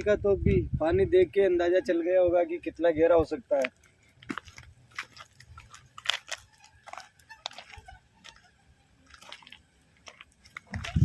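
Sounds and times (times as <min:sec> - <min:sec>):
footsteps crunching on dry ground: 0:03.4 - 0:11.0
crackles and clicks: 0:03.5 - 0:08.4, 0:09.0 - 0:11.0.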